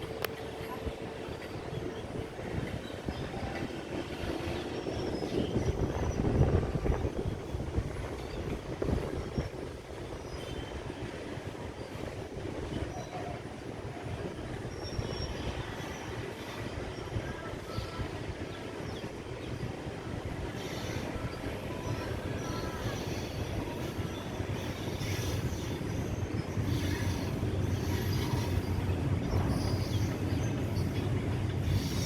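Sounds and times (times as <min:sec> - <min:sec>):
train rumbling past: 0:00.0 - 0:32.0
faint wheel squeals: 0:20.5 - 0:32.0.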